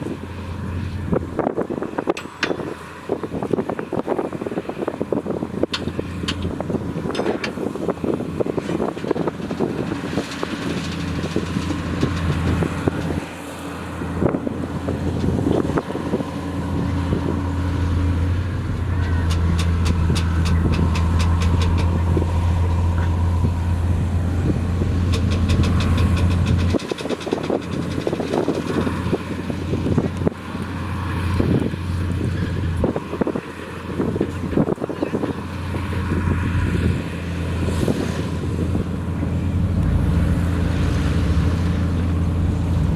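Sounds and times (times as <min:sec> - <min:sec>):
heavy diesel engine under load: 0:00.0 - 0:42.9
fast clattering rattle: 0:25.0 - 0:29.4.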